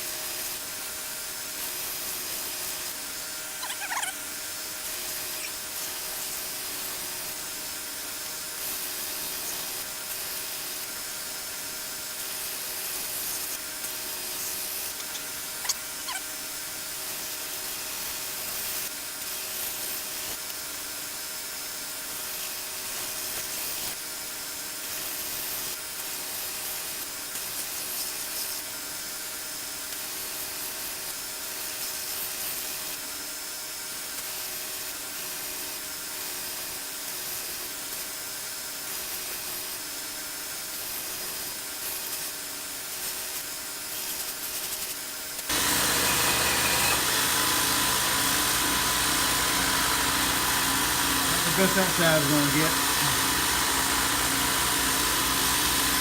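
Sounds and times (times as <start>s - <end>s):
belt sander grinding metal: 45.5s - 56.0s.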